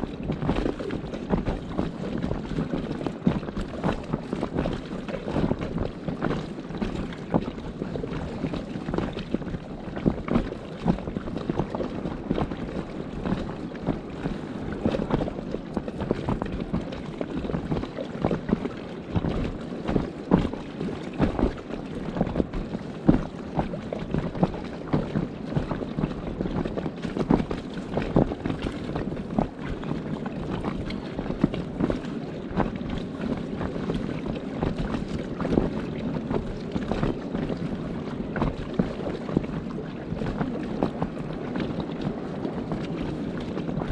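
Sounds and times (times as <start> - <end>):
wind buffeting microphone: 0.0 - 43.9.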